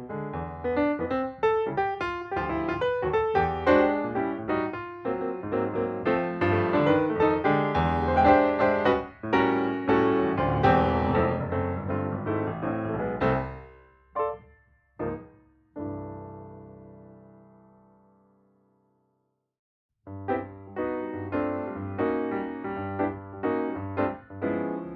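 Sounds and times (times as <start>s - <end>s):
piano music: 0.0s - 18.4s, 20.1s - 24.9s.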